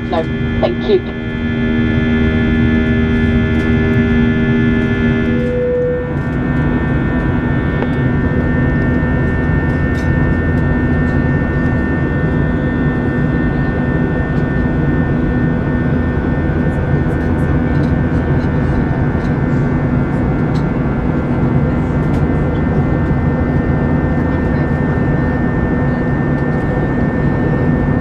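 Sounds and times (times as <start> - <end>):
steady electrical hum: 0.0 - 12.4
jet airliner cabin noise: 0.0 - 28.0.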